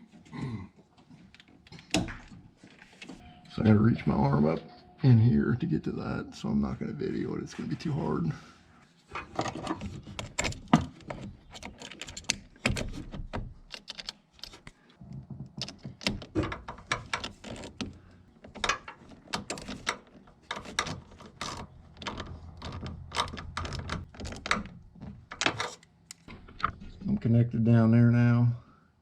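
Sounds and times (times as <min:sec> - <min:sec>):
hand tools clicking and knocking: 0:15.3 - 0:26.9
metal parts being handled: 0:15.6 - 0:27.1.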